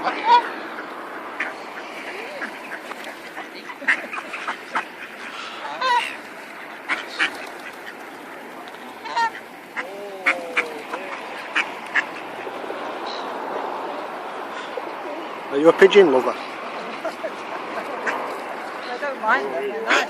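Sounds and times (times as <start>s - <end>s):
waterfowl honking: 0.0s - 13.4s, 17.0s - 20.0s
low gliding bird calls: 0.0s - 15.3s.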